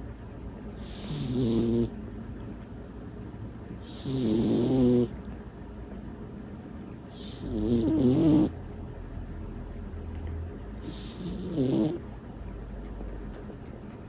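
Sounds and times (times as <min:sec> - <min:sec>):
cat snoring: 0:00.8 - 0:01.9, 0:03.8 - 0:05.2, 0:07.2 - 0:08.6, 0:10.8 - 0:12.1.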